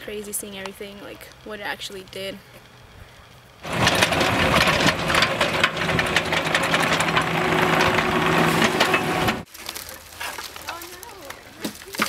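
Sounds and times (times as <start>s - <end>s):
engine running steadily: 0.0s - 9.5s
clattering rattle: 3.6s - 9.5s.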